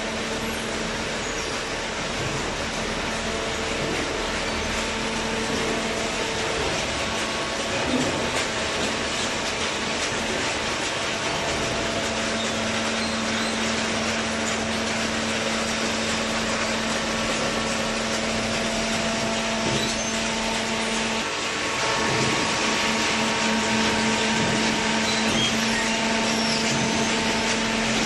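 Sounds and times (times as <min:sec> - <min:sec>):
hydraulic baler running: 0:00.0 - 0:28.0.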